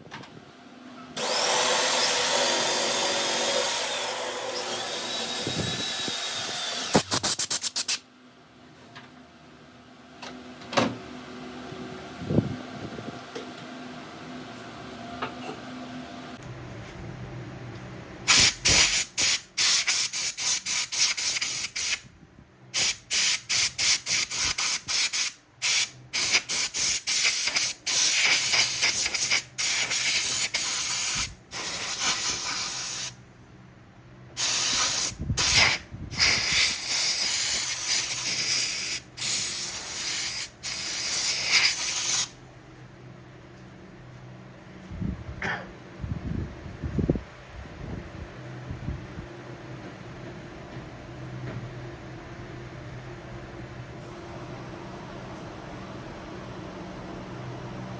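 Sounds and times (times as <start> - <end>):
spraying hiss: 22.8 - 33.1.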